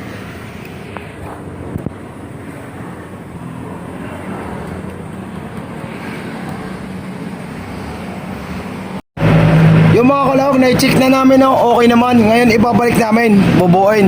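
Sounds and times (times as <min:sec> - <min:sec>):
traffic noise: 0:00.0 - 0:14.0
vehicle engine running: 0:00.0 - 0:14.0.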